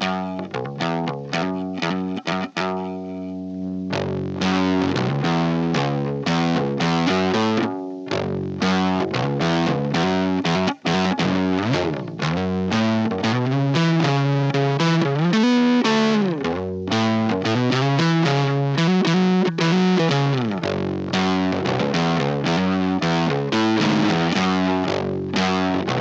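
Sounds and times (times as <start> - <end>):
fuzzed bass guitar riff: 0.0 - 26.0.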